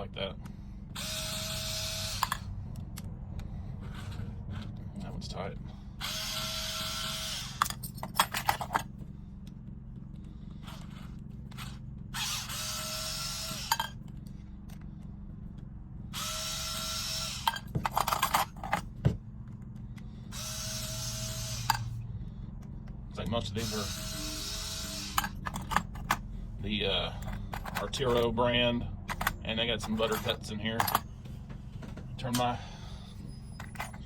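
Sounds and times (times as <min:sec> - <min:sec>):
electric screwdriver running: 0:00.9 - 0:02.5, 0:06.0 - 0:08.8, 0:10.6 - 0:14.0, 0:16.2 - 0:18.8, 0:20.3 - 0:22.0, 0:23.6 - 0:26.2.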